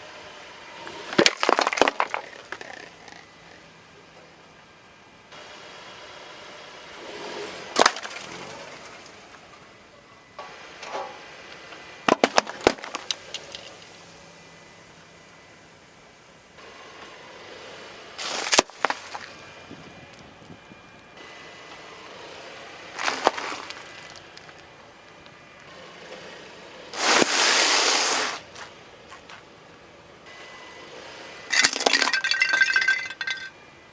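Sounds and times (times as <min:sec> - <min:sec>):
objects cracking under car tyre: 0:01.1 - 0:03.6, 0:07.7 - 0:09.4, 0:12.1 - 0:14.0, 0:18.2 - 0:19.4, 0:23.0 - 0:25.2, 0:31.5 - 0:33.5
loud hissing burst: 0:27.0 - 0:28.5
glass clinking and breaking: 0:31.5 - 0:33.6.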